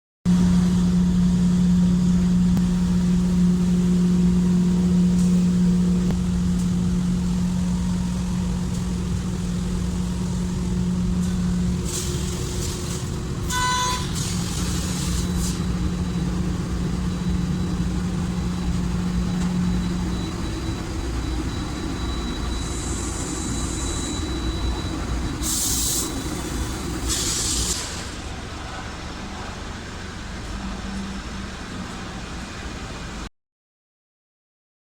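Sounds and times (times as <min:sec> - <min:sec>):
laser cutting machine hum: 0:00.3 - 0:27.7
brief beep: 0:17.0 - 0:26.3
air hiss bursts: 0:25.4 - 0:28.1.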